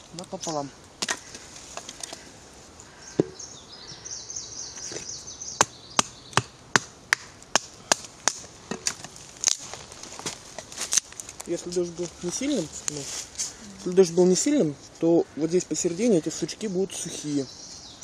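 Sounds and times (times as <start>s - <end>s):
knife chopping branches: 5.6s - 9.6s.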